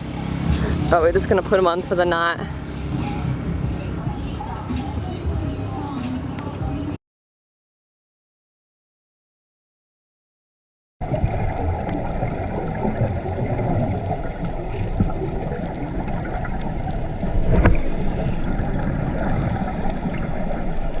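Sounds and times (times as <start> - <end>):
rushing water: 0.0 - 7.0, 11.0 - 21.0
rushing wind: 0.0 - 7.0, 12.2 - 21.0.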